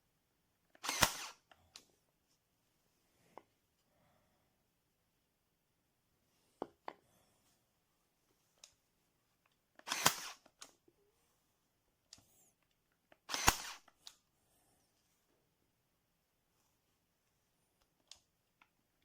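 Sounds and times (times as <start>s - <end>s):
nail gun firing: 0.8s - 1.4s, 9.8s - 10.5s, 13.3s - 13.9s.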